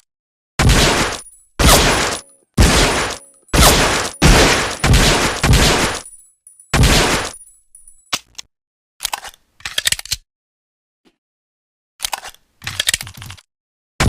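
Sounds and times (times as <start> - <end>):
pistol shots: 0.6 - 6.1, 6.8 - 7.4.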